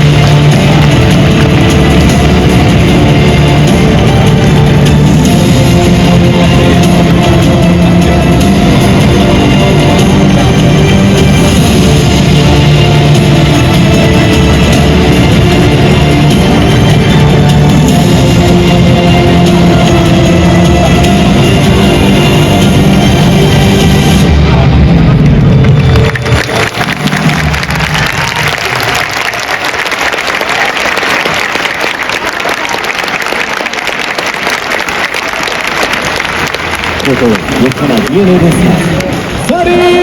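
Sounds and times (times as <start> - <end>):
loud rock music with guitar: 0.0 - 25.3
stadium crowd clapping and cheering: 0.0 - 40.0.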